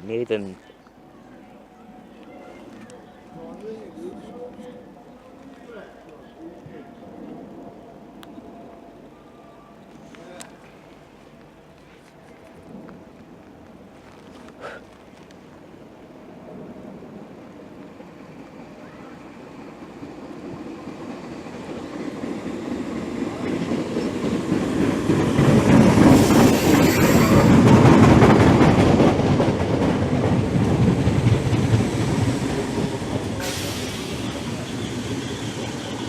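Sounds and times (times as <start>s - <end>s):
train wheels clattering over rails: 19.7s - 36.0s.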